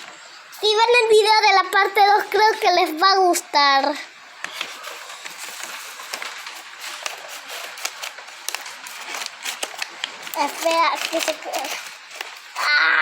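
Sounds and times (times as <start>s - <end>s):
packaging rustling and crinkling: 4.4s - 12.7s.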